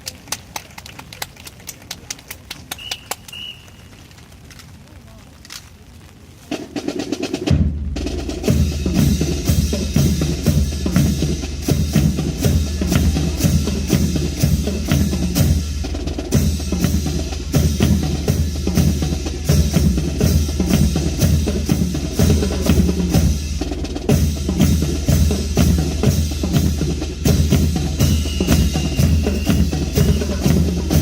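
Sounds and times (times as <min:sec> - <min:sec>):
snare and bass drums playing: 0:06.5 - 0:31.0.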